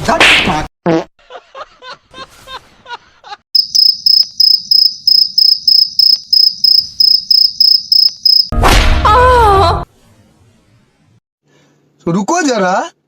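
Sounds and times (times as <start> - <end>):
cricket chirping: 3.6 - 8.5.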